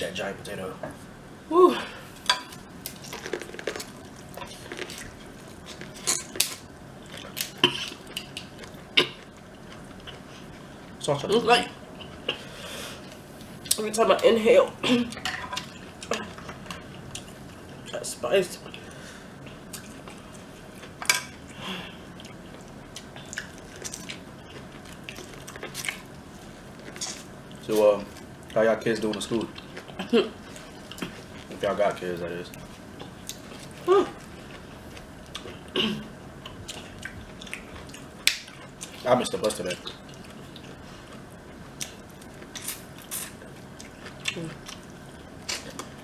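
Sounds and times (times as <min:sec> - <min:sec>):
biting and chewing food: 0:02.8 - 0:10.6.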